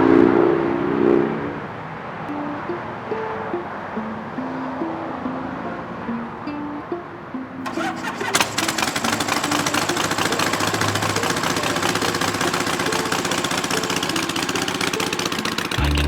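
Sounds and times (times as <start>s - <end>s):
machine rattling clicks: 7.6s - 16.0s.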